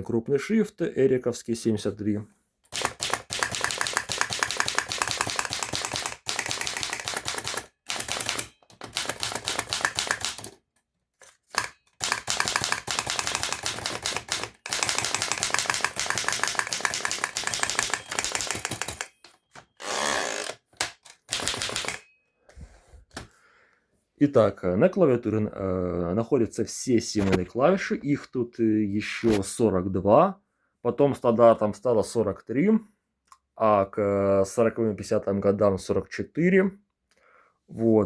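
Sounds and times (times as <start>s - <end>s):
typewriter keys striking: 2.7s - 10.6s, 11.5s - 19.2s, 20.3s - 22.0s.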